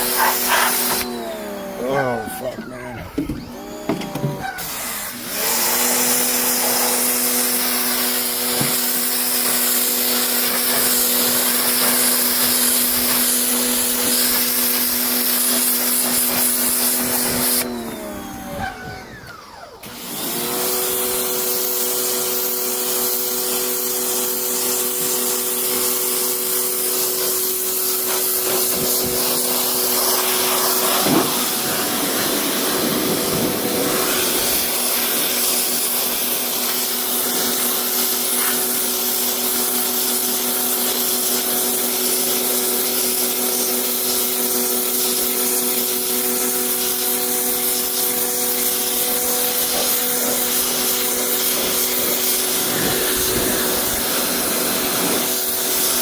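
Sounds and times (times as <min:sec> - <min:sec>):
water spray hissing: 0:00.0 - 0:01.1, 0:06.5 - 0:17.6, 0:25.8 - 0:56.0
pressure washer motor humming: 0:00.0 - 0:56.0.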